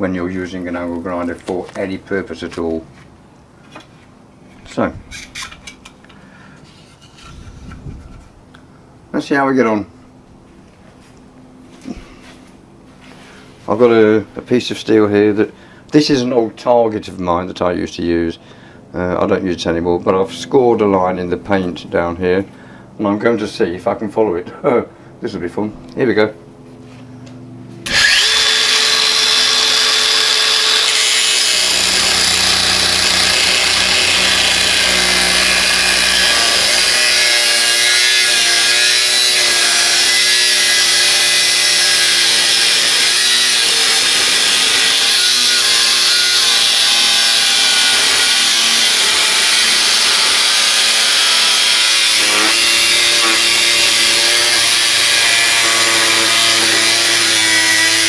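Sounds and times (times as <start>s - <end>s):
angle grinder cutting steel: 27.9s - 58.0s.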